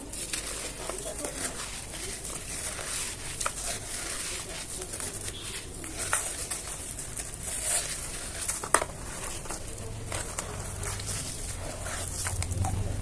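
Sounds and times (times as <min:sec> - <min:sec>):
cement chunks crumbling: 0:00.0 - 0:13.0
falling grains pattering: 0:00.0 - 0:13.0.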